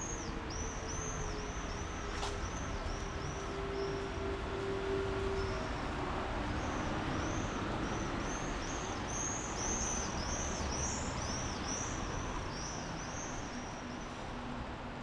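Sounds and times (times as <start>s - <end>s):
city background noise: 0.0s - 15.0s.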